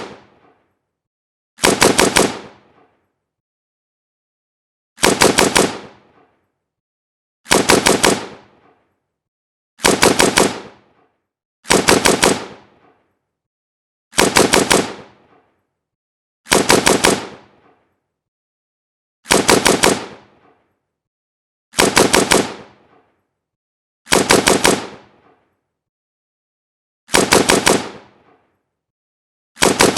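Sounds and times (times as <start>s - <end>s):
rifle firing in bursts: 0.0s - 0.8s, 1.6s - 3.2s, 5.0s - 6.6s, 7.5s - 9.1s, 9.8s - 13.3s, 14.1s - 15.7s, 16.5s - 18.0s, 19.2s - 20.8s, 21.7s - 23.3s, 24.1s - 25.6s, 27.1s - 28.7s, 29.6s - 29.9s.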